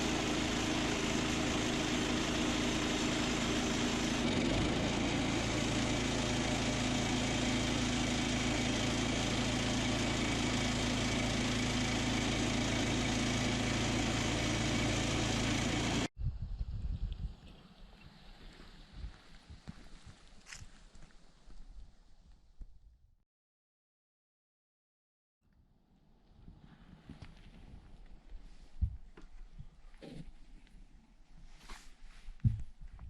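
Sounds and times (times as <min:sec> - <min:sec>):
sawmill engine running: 0:00.0 - 0:16.1.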